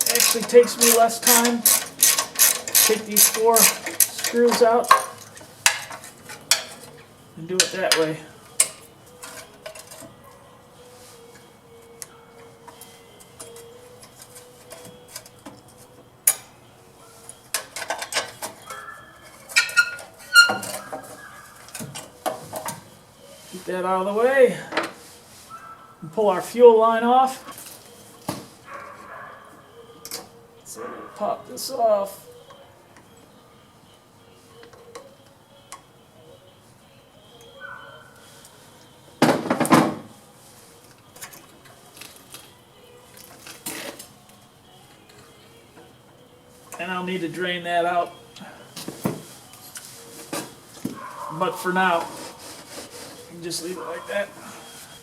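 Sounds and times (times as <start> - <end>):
metal tools clinking and clattering: 0.0 - 10.3, 17.2 - 23.6.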